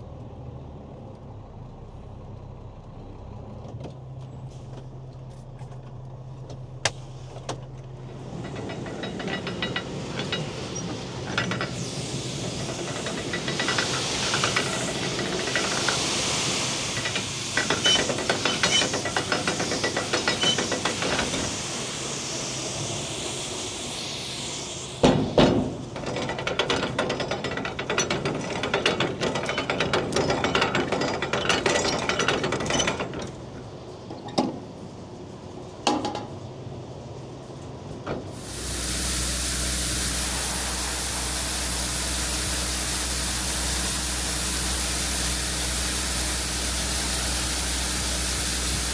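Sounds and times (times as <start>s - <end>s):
farm machinery running: 6.9s - 33.2s, 38.3s - 48.9s.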